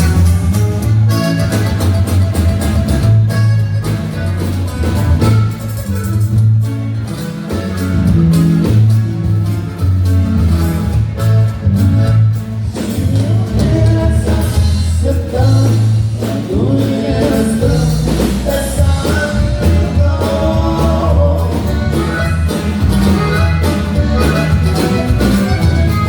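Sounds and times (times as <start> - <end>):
pulsing bass line: 0.0 - 26.0
plucked strings: 19.1 - 26.0.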